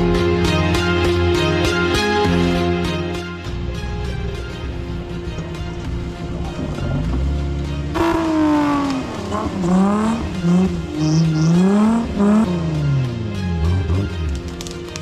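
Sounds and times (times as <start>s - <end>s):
background music: 0.0s - 15.0s
engine revving hard: 7.9s - 14.2s.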